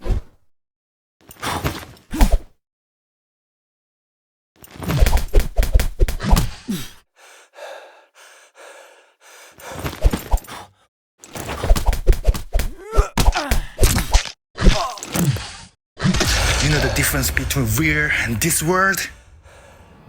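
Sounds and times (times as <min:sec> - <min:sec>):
gasps and grunts: 0:06.2 - 0:10.8, 0:12.7 - 0:16.2
breathy panting: 0:07.1 - 0:09.8
hits and thuds: 0:16.2 - 0:19.4.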